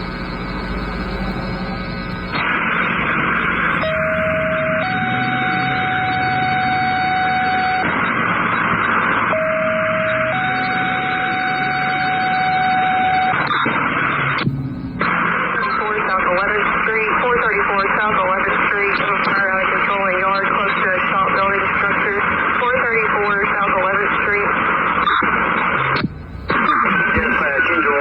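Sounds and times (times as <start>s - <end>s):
radio hiss: 0.0s - 5.7s, 11.3s - 28.0s.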